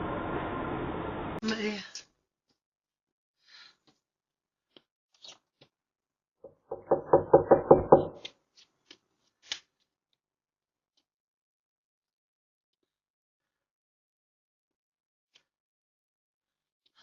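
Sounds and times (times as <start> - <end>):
knocking on a door: 6.5 - 8.2.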